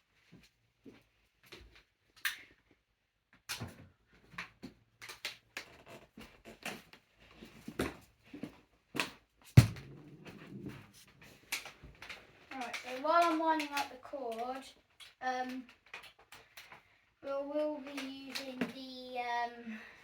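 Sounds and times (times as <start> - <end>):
heavy thump: 9.6 - 10.8.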